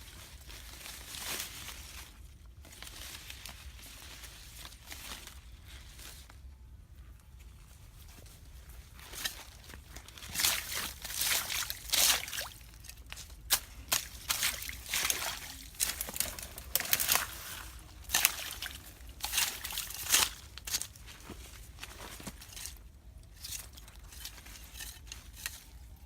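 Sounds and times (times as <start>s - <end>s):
water splashing and sloshing: 9.0s - 22.8s.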